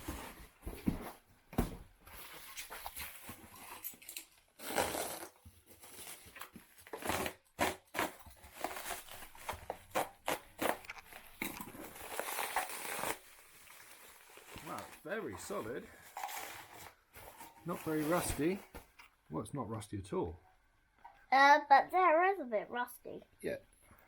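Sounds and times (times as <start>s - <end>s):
packaging being torn open: 9.9s - 13.6s.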